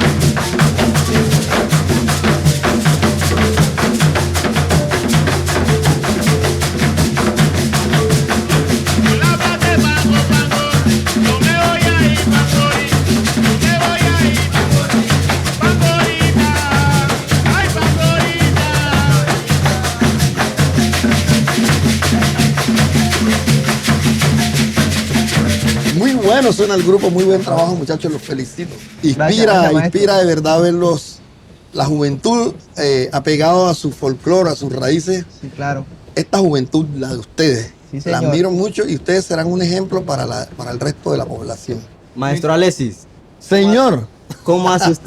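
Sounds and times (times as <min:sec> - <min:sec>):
drums: 0:00.0 - 0:29.1
shakers: 0:00.0 - 0:29.8
person singing: 0:08.9 - 0:21.5.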